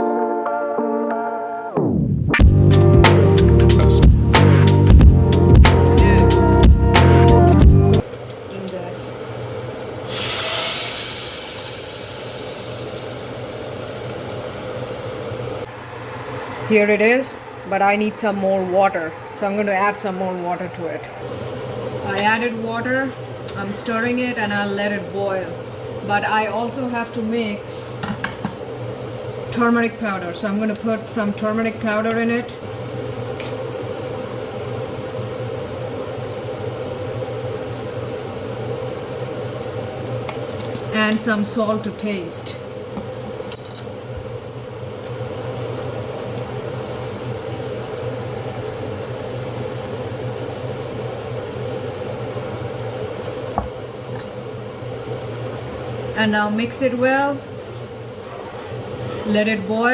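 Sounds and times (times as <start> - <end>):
low kitchen hum: 8.0 - 59.9
oil sizzling in a pan: 9.2 - 15.7
hiss: 10.0 - 14.5.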